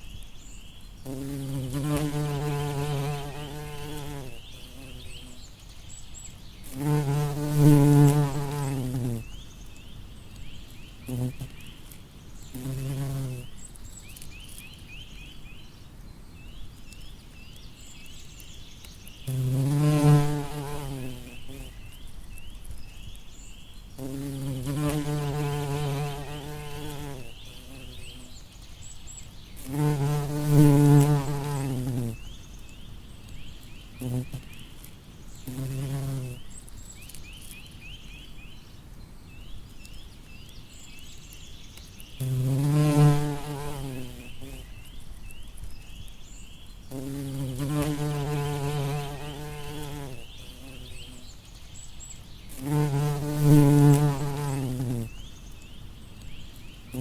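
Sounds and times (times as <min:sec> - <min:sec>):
bumblebee buzzing: 0:01.0 - 0:05.4, 0:06.6 - 0:09.4, 0:11.0 - 0:11.6, 0:12.5 - 0:13.5, 0:19.3 - 0:21.8, 0:24.0 - 0:28.3, 0:29.6 - 0:32.3, 0:34.0 - 0:34.5, 0:35.4 - 0:36.4, 0:42.2 - 0:44.7, 0:46.9 - 0:51.3, 0:52.5 - 0:55.3.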